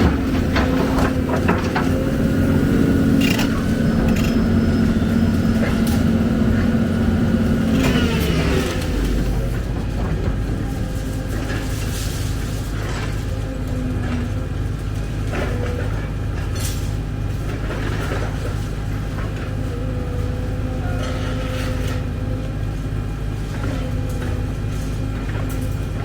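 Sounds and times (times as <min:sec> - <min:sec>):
hydraulic whine: 0:00.0 - 0:14.6
excavator diesel engine: 0:00.0 - 0:26.0.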